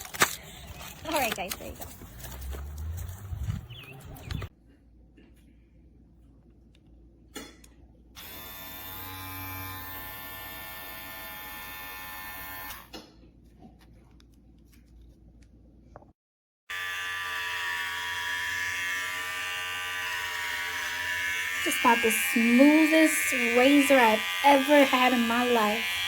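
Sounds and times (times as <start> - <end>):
hair clipper buzzing: 8.2 - 12.9, 16.7 - 26.0.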